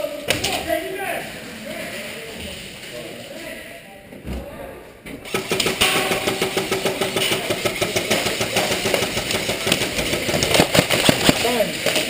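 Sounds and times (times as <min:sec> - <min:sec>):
airsoft guns firing rapidly: 0:05.3 - 0:12.0.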